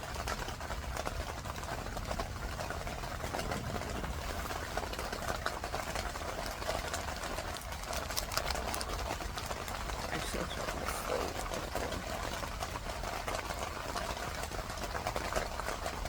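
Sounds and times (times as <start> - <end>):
rain pattering on a tent: 0.0 - 16.0
low rumble: 3.0 - 6.0.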